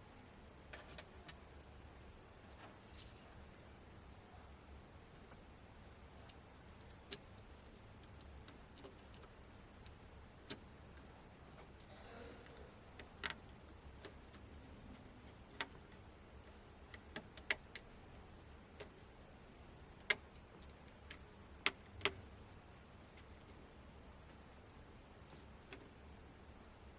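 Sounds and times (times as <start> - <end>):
faint low hum: 0.0 - 26.9.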